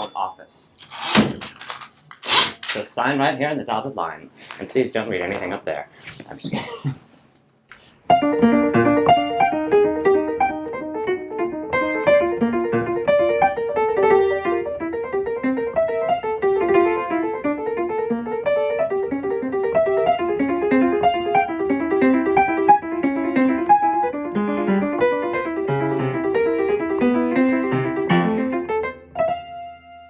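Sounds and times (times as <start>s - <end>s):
piano music: 8.1s - 30.0s.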